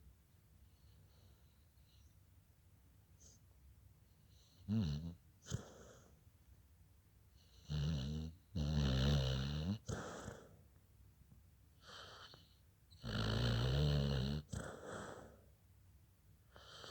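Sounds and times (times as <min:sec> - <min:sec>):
snoring: 0:04.6 - 0:06.0, 0:07.6 - 0:10.4, 0:13.0 - 0:15.3.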